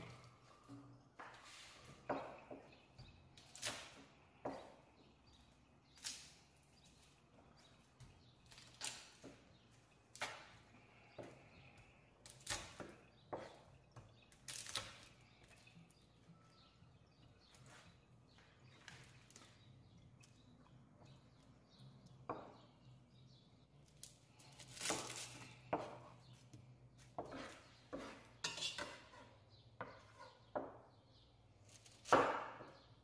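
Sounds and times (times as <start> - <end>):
kitchen utensils and dishes knocking: 27.2 - 30.8.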